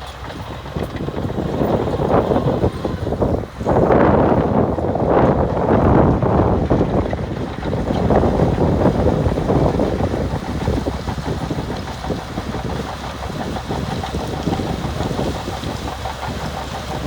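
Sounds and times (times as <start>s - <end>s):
heavy machinery diesel engine rumbling: 0.0s - 17.0s.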